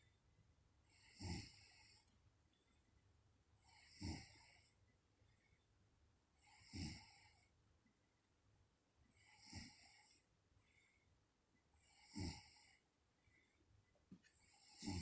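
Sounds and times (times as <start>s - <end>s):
woman snoring: 1.1s - 1.8s, 3.8s - 4.5s, 6.6s - 7.2s, 12.0s - 12.6s, 14.7s - 15.0s.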